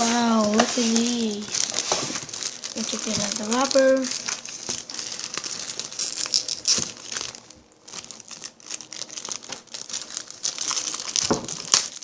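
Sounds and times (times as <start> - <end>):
plastic wrapper crinkling: 0.0 - 12.0.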